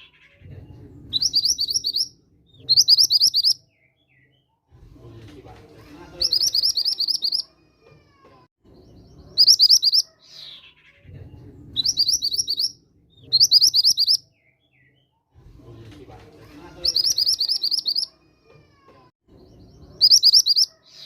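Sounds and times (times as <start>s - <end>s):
bird high rapid chirping: 1.1s - 4.3s, 6.2s - 7.5s, 8.7s - 11.0s, 11.8s - 14.6s, 16.7s - 18.2s, 19.4s - 21.0s.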